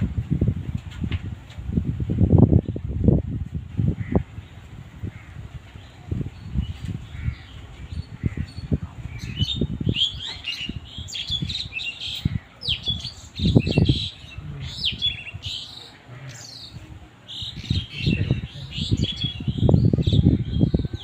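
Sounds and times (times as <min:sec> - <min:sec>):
birds chirping: 0:03.8 - 0:21.0.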